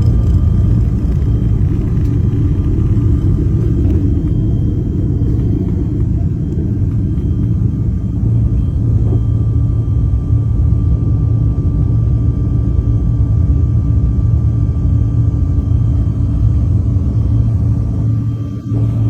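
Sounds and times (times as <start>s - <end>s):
faint steady whine: 0.0s - 19.0s
jet engine cabin rumble: 0.0s - 19.0s.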